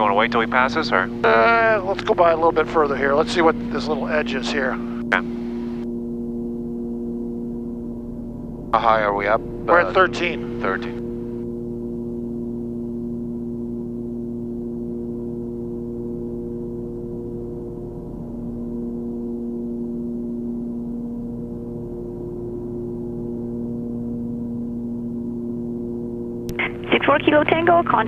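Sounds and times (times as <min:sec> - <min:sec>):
airplane piston engines droning: 0:00.0 - 0:28.0.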